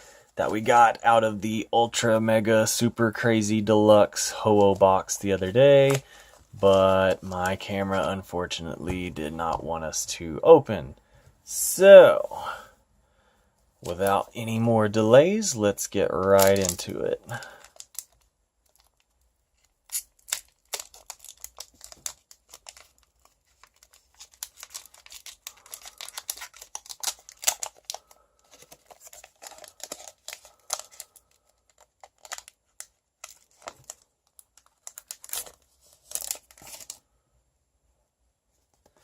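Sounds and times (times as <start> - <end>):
foil wrapper tearing and crinkling: 16.3 - 37.0.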